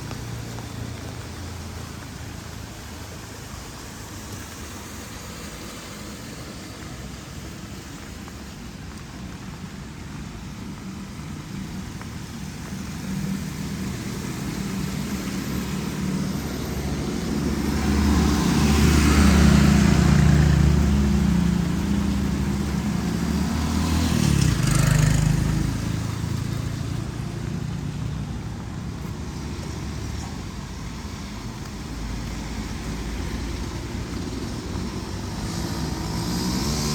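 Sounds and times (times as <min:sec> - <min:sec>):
vehicle engine passing: 0:12.5 - 0:36.9.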